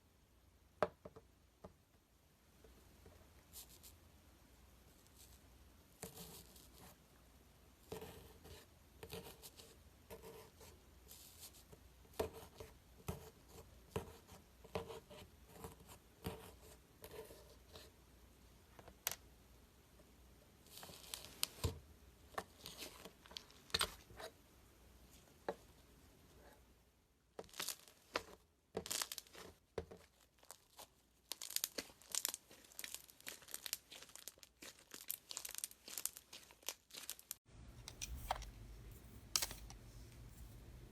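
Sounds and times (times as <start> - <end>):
slime crackling and popping: 31.3 - 37.4.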